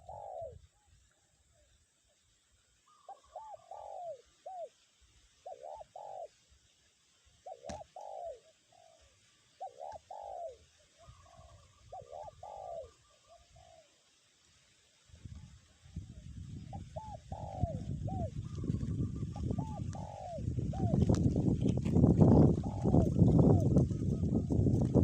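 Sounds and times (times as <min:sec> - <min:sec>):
dove cooing: 0:00.0 - 0:00.8, 0:02.9 - 0:04.8, 0:05.4 - 0:06.4, 0:07.4 - 0:14.0, 0:15.4 - 0:25.0
wind rumble on microphone: 0:15.1 - 0:25.0.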